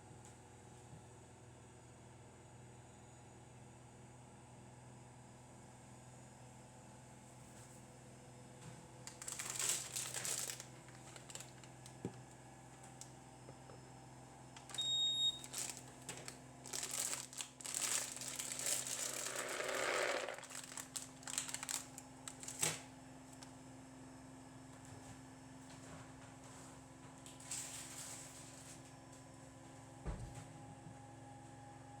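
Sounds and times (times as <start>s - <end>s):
crinkling and rustling: 9.1s - 12.0s, 15.4s - 23.5s, 27.3s - 28.8s.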